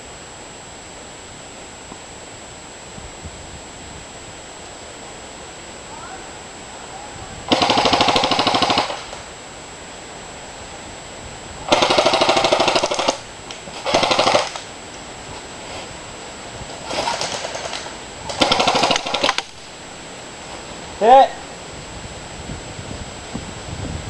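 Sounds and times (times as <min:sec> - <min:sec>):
airsoft gun firing bursts: 0:07.5 - 0:09.3, 0:11.7 - 0:14.7, 0:16.8 - 0:19.6.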